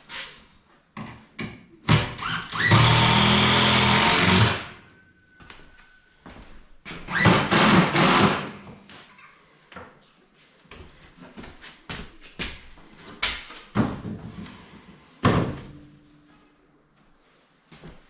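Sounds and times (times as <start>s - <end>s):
power drill running: 2.5s - 4.7s, 7.4s - 8.5s.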